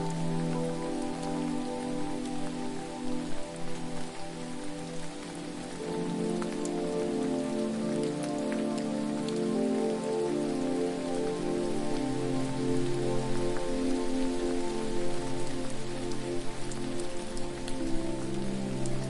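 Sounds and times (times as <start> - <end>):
ambient music pad: 0.0 - 19.0
faint sharp drip-like ticks: 0.0 - 19.0
falling water hiss: 0.0 - 19.0.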